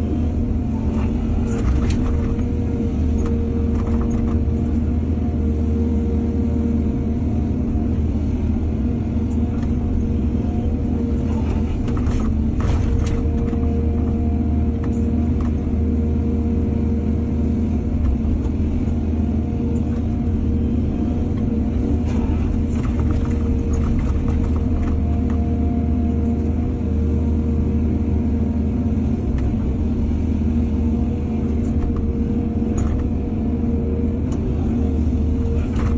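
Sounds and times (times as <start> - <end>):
excavator diesel engine running: 0.0 - 35.9.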